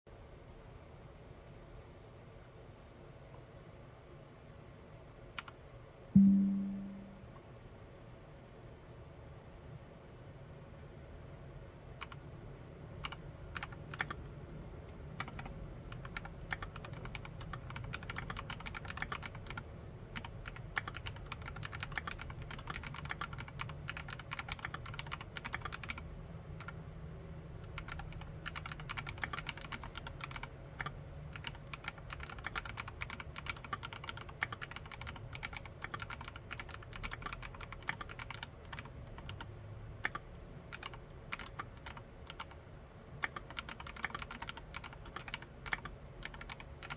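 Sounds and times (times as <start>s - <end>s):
mechanical keyboard typing: 12.0s - 12.2s, 13.0s - 14.2s, 15.2s - 19.6s, 20.2s - 26.0s, 27.7s - 42.6s, 43.2s - 46.9s.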